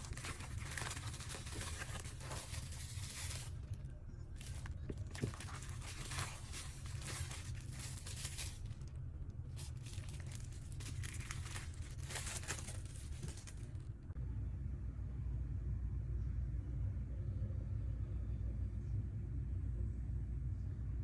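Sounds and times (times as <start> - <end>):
packaging crinkling and tearing: 0.0 - 3.8, 4.4 - 8.9, 9.5 - 13.8
steady low hum: 0.0 - 21.0.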